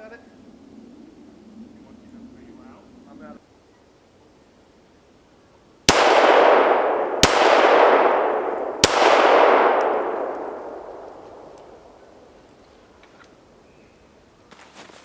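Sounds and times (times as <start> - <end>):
rifle shots with echo: 5.9 - 12.2.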